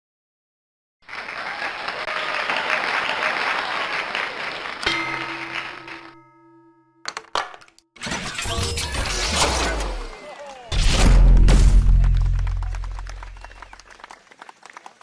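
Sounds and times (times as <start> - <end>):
applause: 1.0 - 6.2, 12.0 - 15.0
sharp hit with ringing tone: 4.9 - 7.0.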